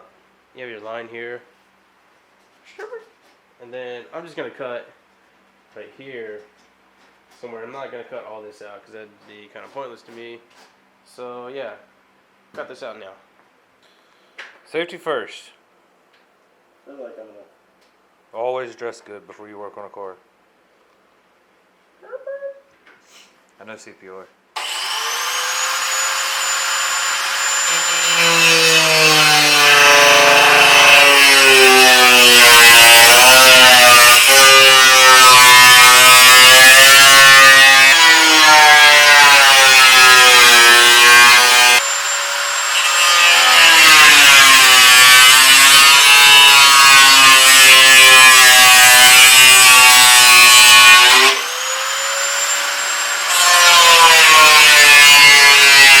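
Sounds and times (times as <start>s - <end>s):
power cutting tool cutting metal: 24.6s - 56.0s.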